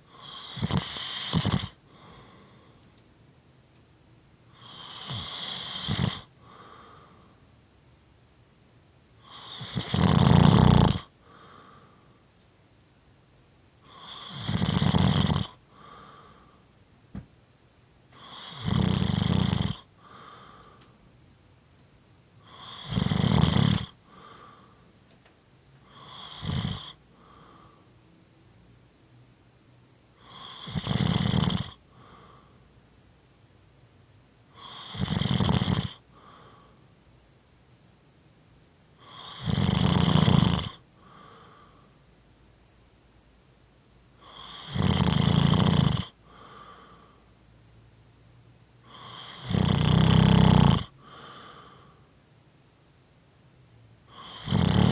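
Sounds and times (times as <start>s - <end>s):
loud rasping snores: 0.1s - 2.4s, 4.6s - 6.3s, 9.2s - 11.1s, 13.8s - 15.6s, 18.2s - 20.3s, 22.4s - 24.4s, 25.9s - 27.4s, 30.2s - 31.8s, 34.6s - 36.4s, 39.0s - 41.2s, 44.2s - 46.8s, 48.9s - 51.7s, 54.1s - 54.9s
soft breath: 1.8s - 3.0s, 6.3s - 7.5s, 11.2s - 12.4s, 15.7s - 16.8s, 19.9s - 21.2s, 23.9s - 25.0s, 26.9s - 28.0s, 31.8s - 32.7s, 36.0s - 37.0s, 41.0s - 42.1s, 46.2s - 47.4s, 50.9s - 52.2s.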